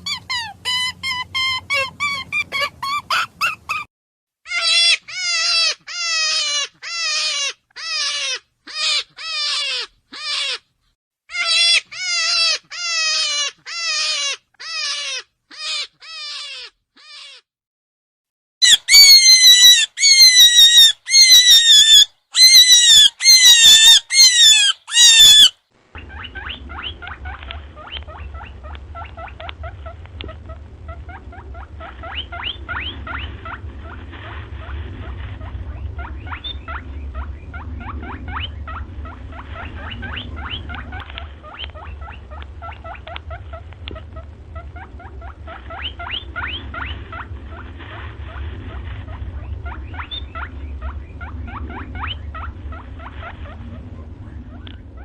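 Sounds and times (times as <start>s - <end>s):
rabbit screaming: 0.0s - 3.9s, 4.5s - 10.7s, 11.3s - 17.5s, 18.6s - 55.0s
steady low hum: 25.7s - 55.0s
rabbit chewing crunchily: 26.2s - 55.0s.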